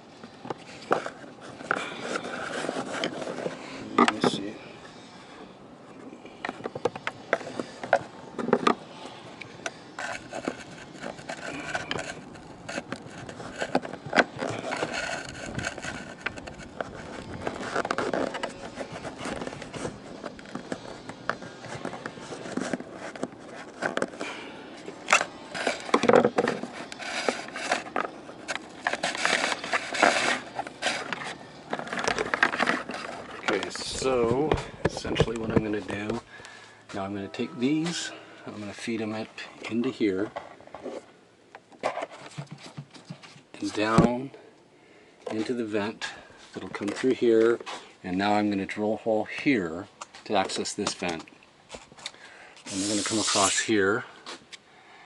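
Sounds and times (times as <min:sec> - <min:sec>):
cables scraping and rubbing: 0:00.0 - 0:36.4, 0:52.6 - 0:54.0.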